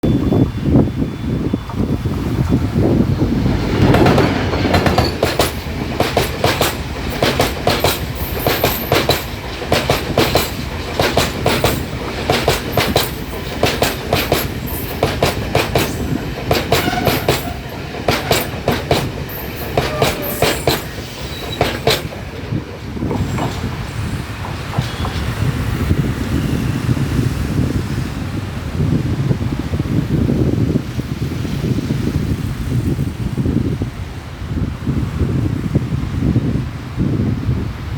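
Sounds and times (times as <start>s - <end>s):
train low rumble: 0.0s - 37.9s
train wheels clattering over rail joints: 1.6s - 27.7s.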